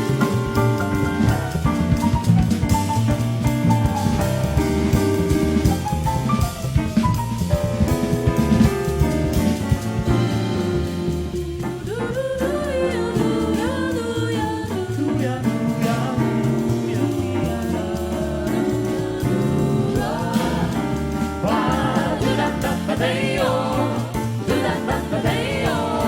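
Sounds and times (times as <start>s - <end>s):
jazz band with bass and drums: 0.0s - 26.0s
vocal group singing in harmony: 10.2s - 26.0s.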